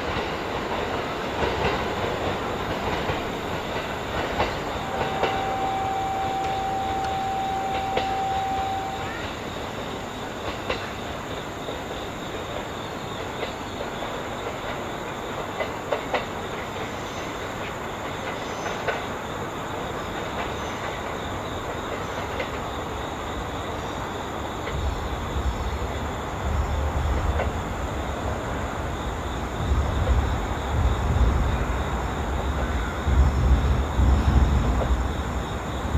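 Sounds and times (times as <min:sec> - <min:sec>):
train moving on rails: 0:00.0 - 0:35.9
wheels clicking over track: 0:00.1 - 0:09.3.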